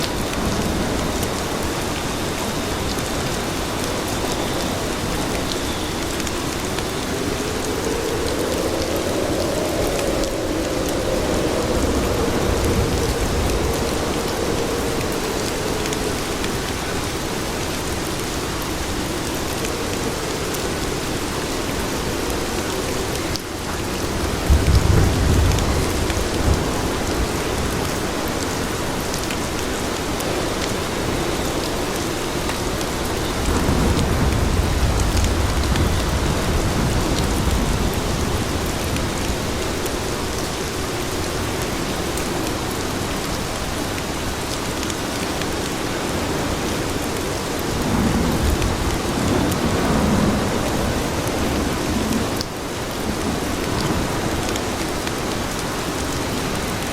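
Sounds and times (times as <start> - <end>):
steady rain falling: 0.0 - 56.9
deep low rumble: 6.3 - 17.2.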